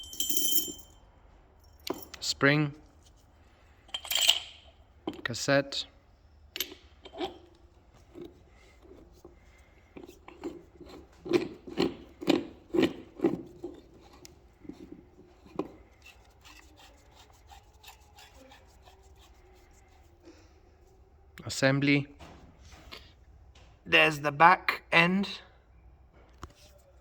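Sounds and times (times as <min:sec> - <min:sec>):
metal parts knocking and clicking: 0:03.9 - 0:05.3, 0:06.5 - 0:08.3
metal rubbing: 0:06.6 - 0:20.1.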